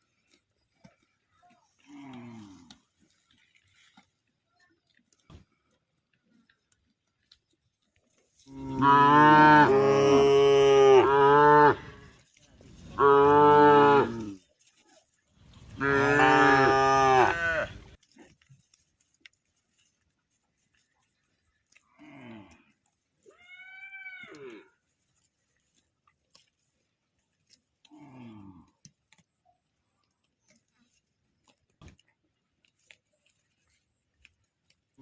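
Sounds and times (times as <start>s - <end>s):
cow mooing: 8.5s - 12.0s, 13.0s - 14.3s, 15.7s - 17.8s.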